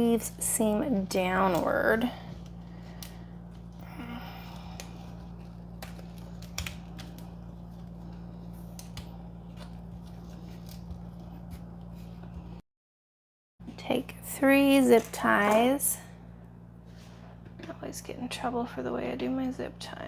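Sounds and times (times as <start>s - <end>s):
steady low hum: 0.0s - 12.6s, 13.6s - 20.0s
cable clicks and rustles: 4.6s - 11.8s.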